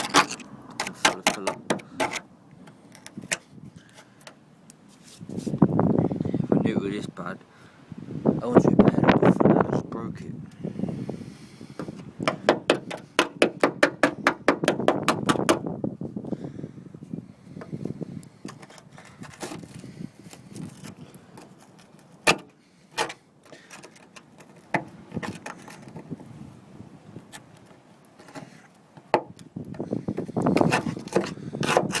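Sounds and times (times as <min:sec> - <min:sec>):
tool tapping on rusted metal: 0:00.0 - 0:03.4, 0:11.8 - 0:15.6, 0:22.2 - 0:23.2, 0:28.3 - 0:32.0.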